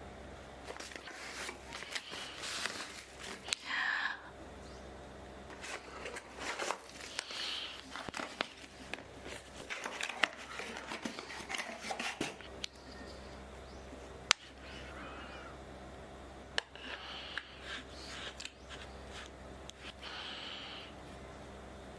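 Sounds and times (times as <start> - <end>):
low steady hum: 0.0 - 21.9
packaging rustling and scraping: 0.6 - 3.5, 5.5 - 13.2.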